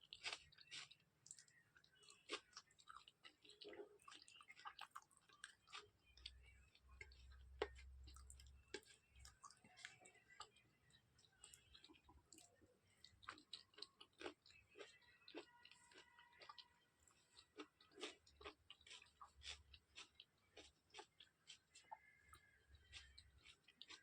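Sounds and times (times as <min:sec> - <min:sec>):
wet chewing mouth sounds: 0:00.0 - 0:24.0.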